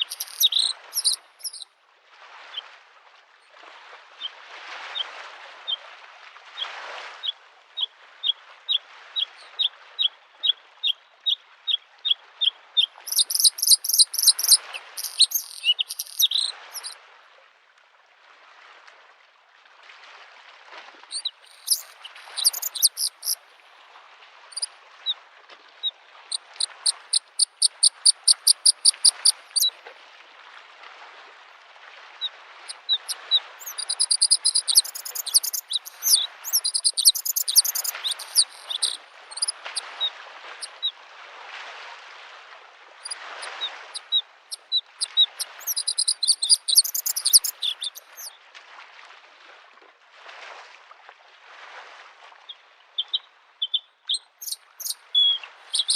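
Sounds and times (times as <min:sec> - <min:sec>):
bird singing: 0:00.0 - 0:01.6, 0:13.1 - 0:17.0, 0:21.1 - 0:23.4, 0:26.6 - 0:29.7, 0:32.7 - 0:39.5, 0:44.5 - 0:48.3, 0:53.0 - 0:55.9
small waves lapping shore: 0:00.0 - 0:55.9.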